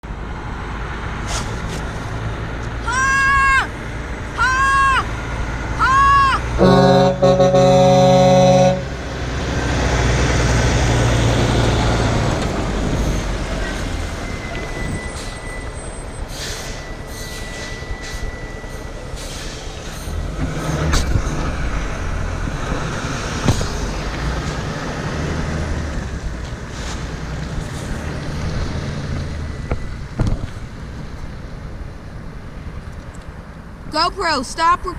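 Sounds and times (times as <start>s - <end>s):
steady traffic noise: 0.0s - 34.9s
truck engine and tyres passing: 0.0s - 34.9s
truck air horn: 6.6s - 9.0s.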